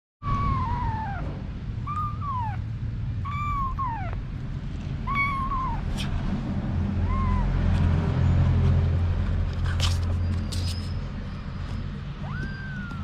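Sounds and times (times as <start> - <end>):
kittens meowing: 0.2 - 4.2, 5.0 - 6.2, 6.9 - 7.8, 12.2 - 13.0
steady low hum: 0.5 - 12.2.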